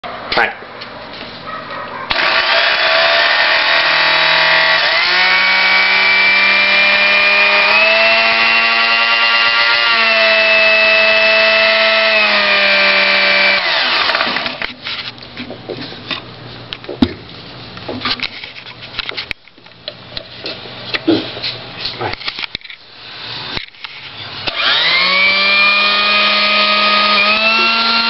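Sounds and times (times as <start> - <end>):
electric blender motor running: 2.1 - 14.6, 24.5 - 28.0.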